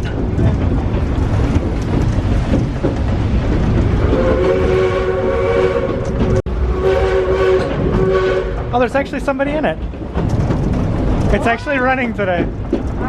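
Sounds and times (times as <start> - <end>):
steam train rumble and rattle: 0.0 - 13.0
steam locomotive whistle chord: 6.7 - 8.6.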